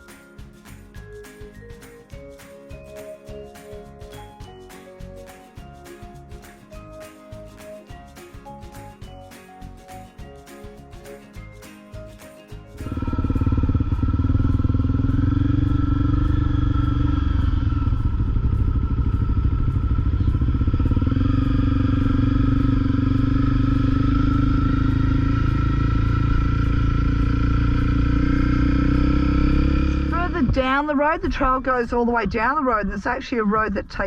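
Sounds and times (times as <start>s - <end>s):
motorcycle engine running: 12.5s - 31.8s.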